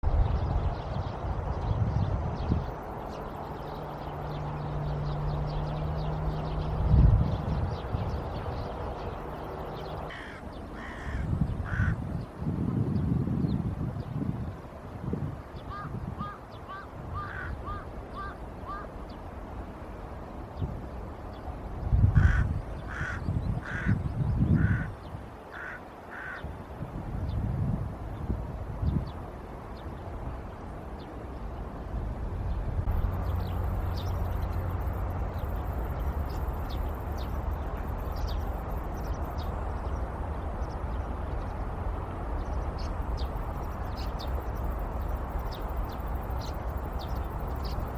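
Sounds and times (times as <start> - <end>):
low rumbling microphone noise: 0.0 - 16.2, 26.8 - 47.9
rooks cawing: 10.1 - 12.0, 15.7 - 18.9, 22.2 - 24.0, 24.6 - 24.9, 25.5 - 26.5
steady low hum: 28.4 - 47.9.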